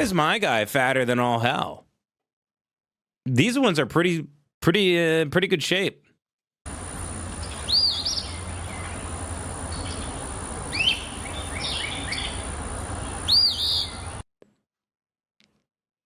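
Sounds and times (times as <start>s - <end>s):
recording hiss and low hum: 6.7s - 14.2s
recorded bird song: 6.8s - 14.2s.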